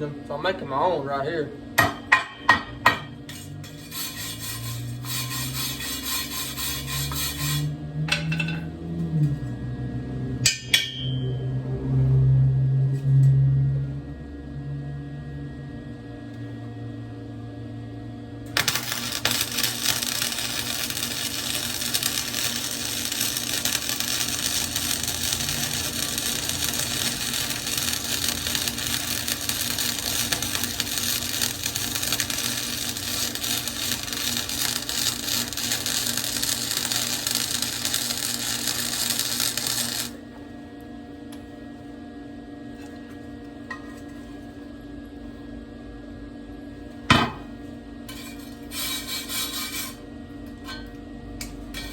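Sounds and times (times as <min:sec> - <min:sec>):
arc welding crackle: 0:03.3 - 0:07.8, 0:18.4 - 0:40.2
low hum: 0:07.8 - 0:40.4.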